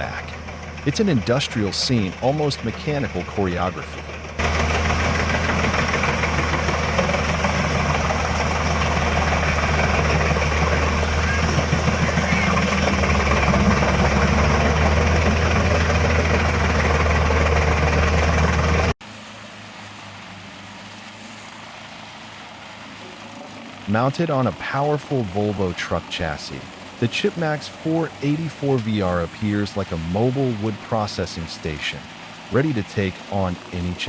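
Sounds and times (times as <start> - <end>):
drum chipper engine drone: 0.0 - 34.0.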